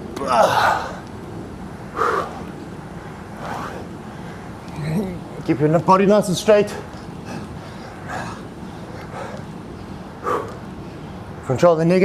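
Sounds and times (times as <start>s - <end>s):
man exhaling forcefully: 2.0s - 2.5s.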